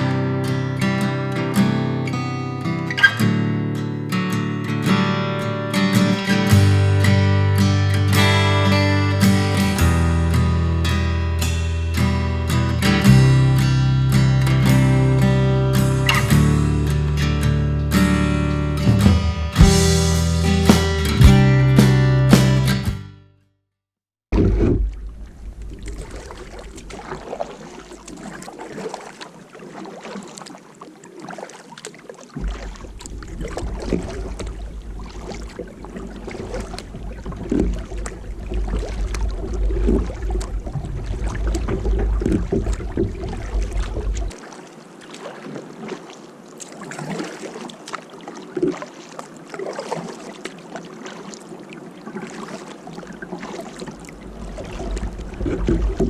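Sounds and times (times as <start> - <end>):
water dripping and sloshing: 24.4 - 56.0
paddle splashing in water: 25.6 - 56.0
wind rumbling on microphone: 32.4 - 44.3, 53.9 - 56.0.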